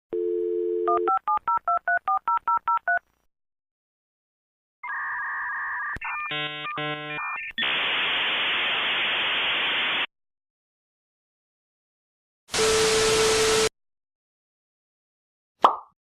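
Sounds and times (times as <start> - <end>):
dial-up modem tones: 0.1 - 3.0, 4.8 - 7.8
modem hiss: 6.4 - 10.1.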